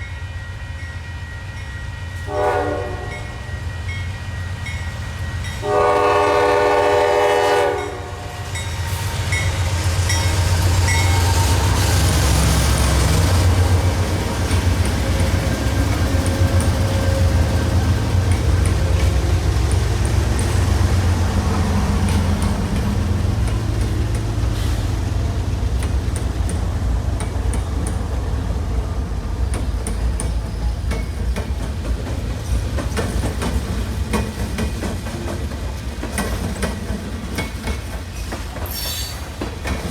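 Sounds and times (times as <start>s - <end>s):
locomotive air horn: 2.2s - 3.5s, 5.6s - 8.5s
train wheels clicking on rails: 4.6s - 39.9s.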